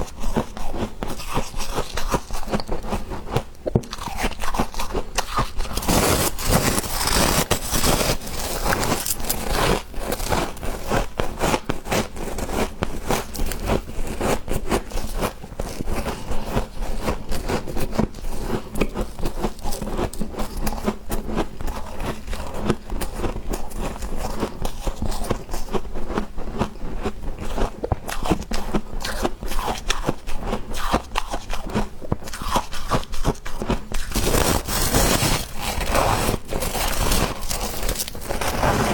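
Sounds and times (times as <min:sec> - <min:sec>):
frost being scraped and crunched: 0:04.4 - 0:20.8, 0:32.3 - 0:38.9.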